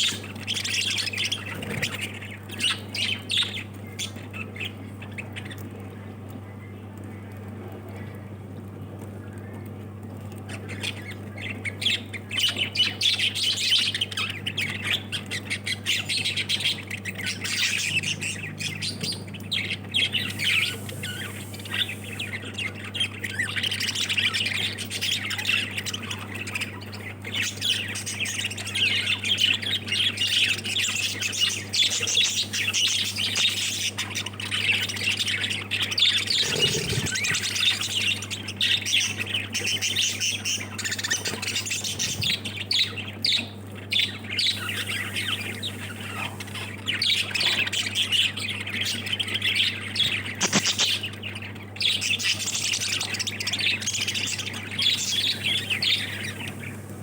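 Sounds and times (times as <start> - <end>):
steady low hum: 0.0 - 24.6, 35.3 - 38.4, 43.6 - 47.4, 53.6 - 57.0
lovebirds chattering and squawking: 0.0 - 57.0.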